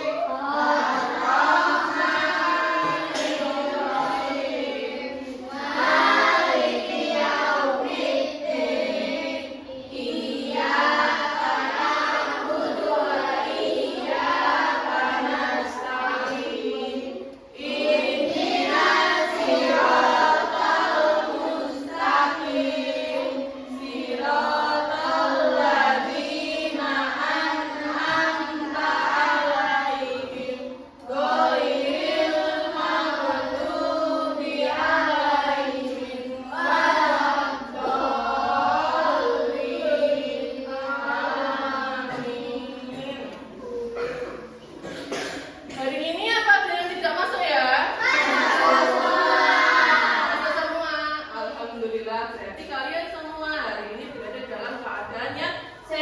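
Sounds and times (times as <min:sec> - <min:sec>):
children singing in unison: 0:00.0 - 0:45.8, 0:48.0 - 0:51.7.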